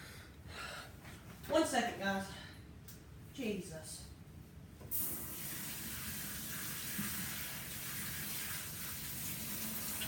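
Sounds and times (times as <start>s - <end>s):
tap water running into sink: 4.9s - 10.0s.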